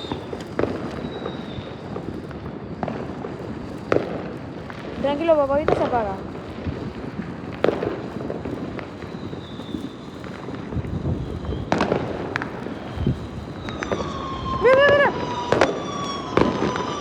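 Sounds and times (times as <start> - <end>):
fireworks hissing and popping: 0.0 - 17.0
fireworks sharp bangs: 0.0 - 17.0
steady whistling tone: 9.0 - 10.2.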